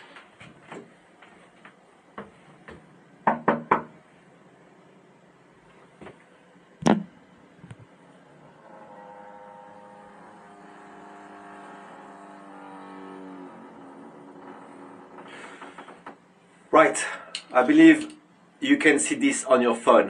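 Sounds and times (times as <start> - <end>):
drone of held tones: 8.4 - 15.2.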